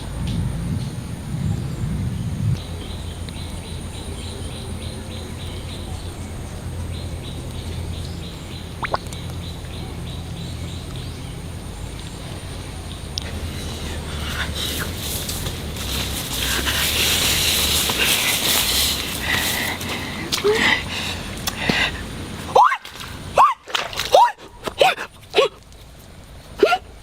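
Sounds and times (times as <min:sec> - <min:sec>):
low rumble: 0:00.0 - 0:05.0
bird chirping: 0:02.6 - 0:20.6.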